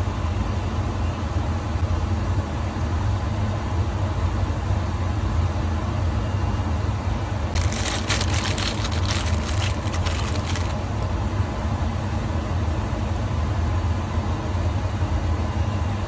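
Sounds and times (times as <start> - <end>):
low machine hum: 7.2 - 16.0.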